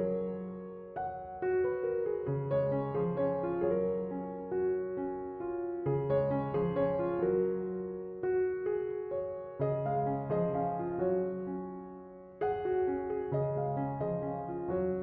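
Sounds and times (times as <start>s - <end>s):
slow piano music: 0.0s - 15.0s.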